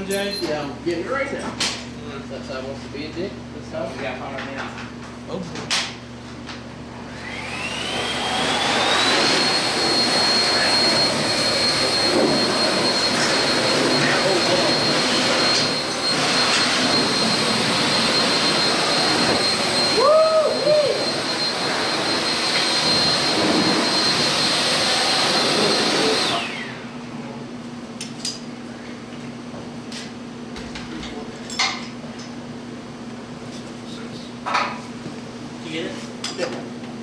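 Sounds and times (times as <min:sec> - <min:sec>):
motor blower whining: 0:06.5 - 0:27.1.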